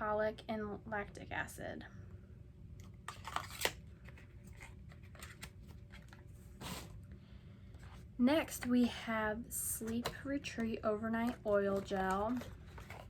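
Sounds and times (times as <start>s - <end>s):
packaging clicks and rustles: 3.1s - 6.9s, 9.8s - 13.0s.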